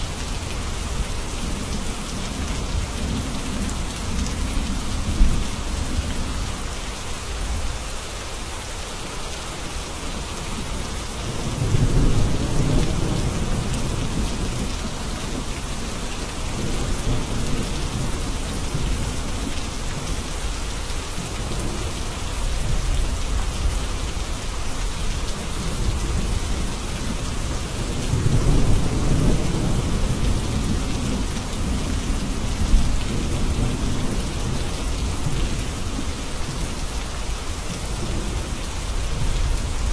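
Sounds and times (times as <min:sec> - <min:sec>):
steady rain: 0:00.0 - 0:39.9
low rolling thunder: 0:10.7 - 0:19.5, 0:25.2 - 0:36.8.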